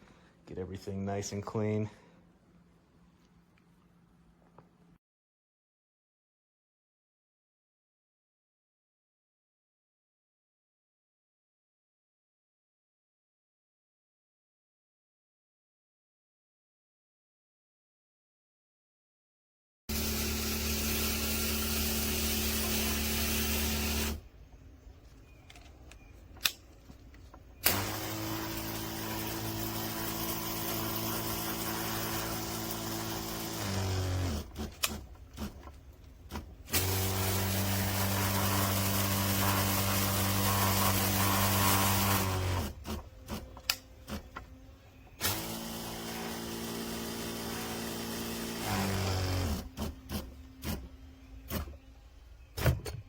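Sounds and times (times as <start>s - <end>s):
water pump motor humming: 19.9s - 24.2s, 27.6s - 35.6s, 36.4s - 44.3s, 45.2s - 49.9s.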